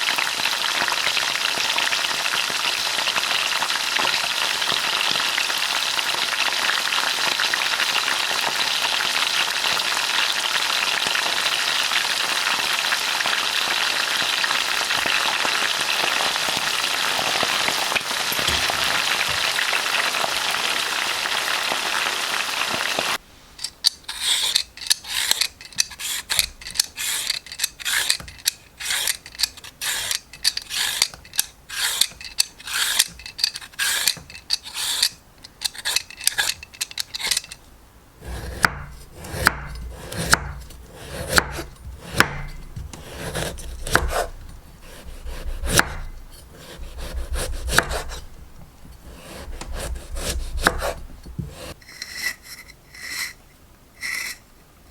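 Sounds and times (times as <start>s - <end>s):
food sizzling in hot oil: 0.0s - 23.2s
vegetable peeling scrapes: 23.9s - 37.5s, 38.2s - 48.3s, 49.0s - 53.4s.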